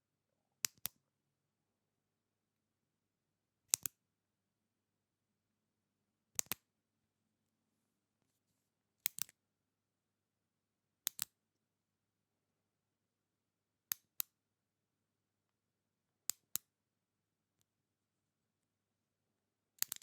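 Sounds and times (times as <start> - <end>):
retractable pen clicking: 9.0 - 9.4, 19.8 - 20.0.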